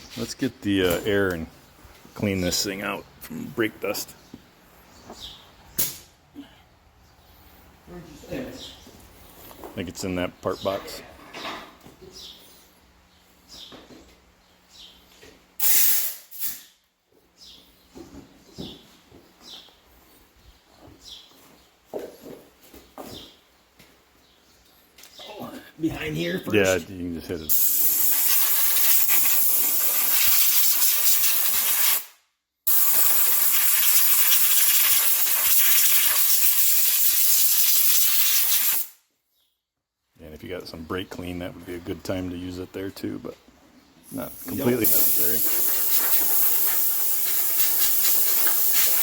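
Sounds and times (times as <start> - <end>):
compressed air blast: 15.6 - 16.8, 27.5 - 39.0, 44.2 - 49.0.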